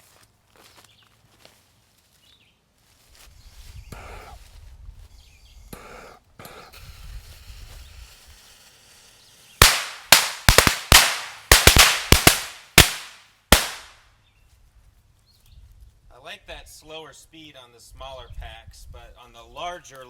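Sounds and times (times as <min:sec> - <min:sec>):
firecrackers banging: 0:09.6 - 0:14.0.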